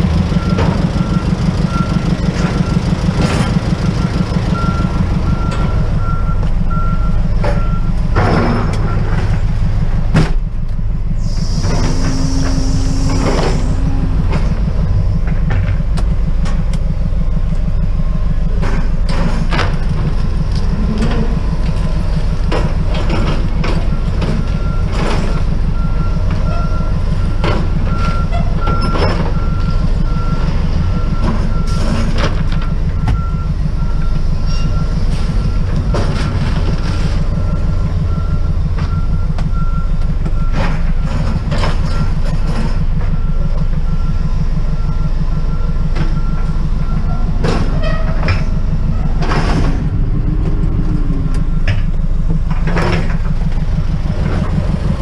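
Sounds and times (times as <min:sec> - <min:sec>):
vehicle engine rumbling: 0:00.0 - 0:55.0
faint high beep: 0:11.2 - 0:15.2.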